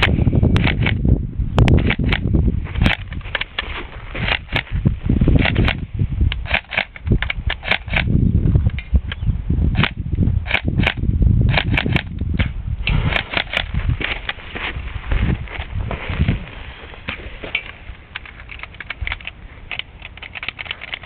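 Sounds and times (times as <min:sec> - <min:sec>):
airsoft gun snaps and clicks: 0:00.0 - 0:01.0, 0:01.6 - 0:04.7, 0:05.4 - 0:08.1, 0:08.7 - 0:14.4, 0:17.1 - 0:21.0
low rumbling noise: 0:00.0 - 0:21.0.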